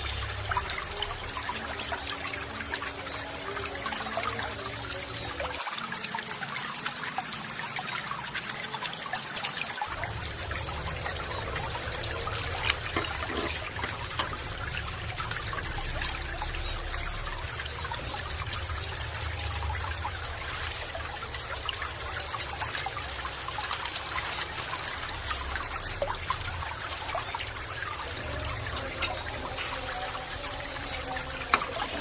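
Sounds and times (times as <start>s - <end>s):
food sizzling in hot oil: 0.0s - 2.8s, 9.9s - 32.0s.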